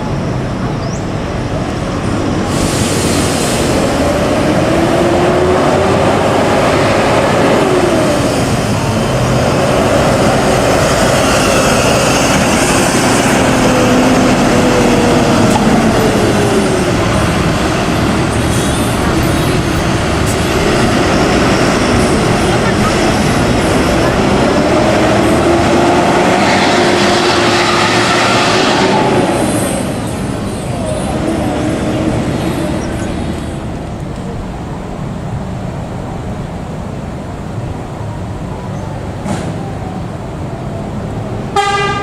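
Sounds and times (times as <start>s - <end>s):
road and wind rumble: 0.0s - 42.0s
vehicle engine revving: 3.0s - 33.7s.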